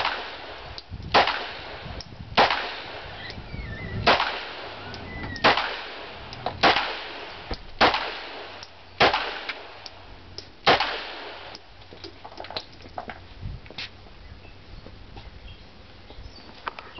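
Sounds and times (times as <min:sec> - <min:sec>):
pistol shots: 0:00.0 - 0:03.2, 0:04.0 - 0:09.8, 0:10.6 - 0:11.6.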